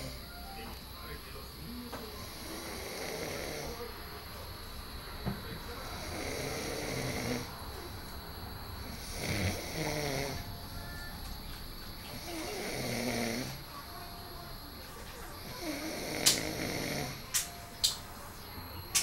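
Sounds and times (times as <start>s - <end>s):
person snoring: 0.0s - 0.3s, 2.2s - 3.9s, 5.8s - 7.6s, 8.8s - 10.5s, 12.1s - 13.6s, 15.4s - 17.2s.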